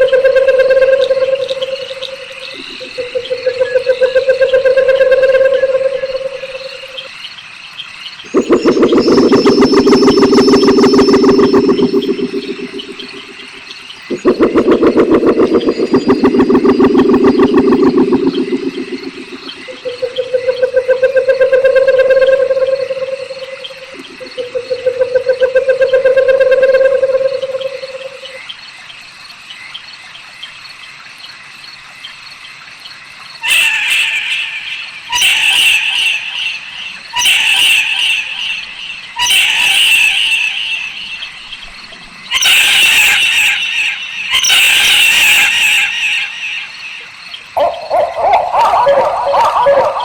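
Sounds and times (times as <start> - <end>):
owl wavering hoot: 0.0 - 7.1, 8.3 - 28.4, 33.4 - 41.3, 42.3 - 50.0
owl rasping screeches: 42.3 - 46.6.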